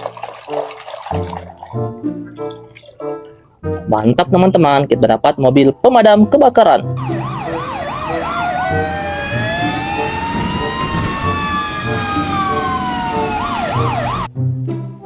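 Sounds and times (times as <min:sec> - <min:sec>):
fire engine siren: 0:07.0 - 0:14.3.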